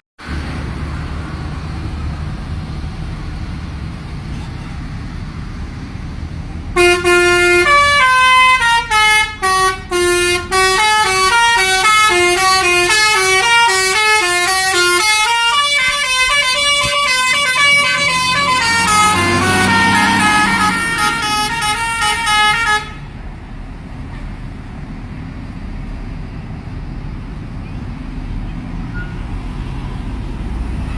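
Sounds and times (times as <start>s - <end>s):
musical air horn melody: 6.8s - 23.0s.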